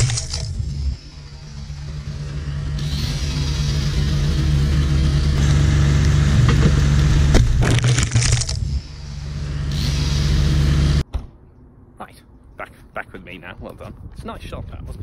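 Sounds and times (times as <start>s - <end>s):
tree trunk cracking and crashing: 0.0s - 0.8s, 7.3s - 8.8s
chainsaw running: 0.0s - 11.0s.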